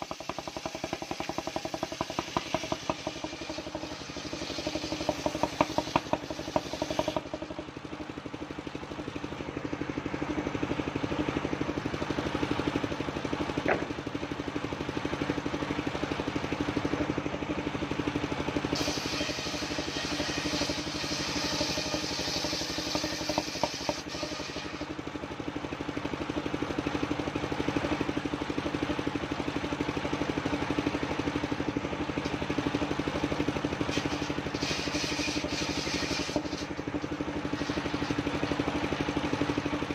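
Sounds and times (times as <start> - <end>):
saw blade cutting wood: 0.0 - 7.6, 18.8 - 25.0, 33.7 - 38.7
sawmill engine running: 0.0 - 39.9.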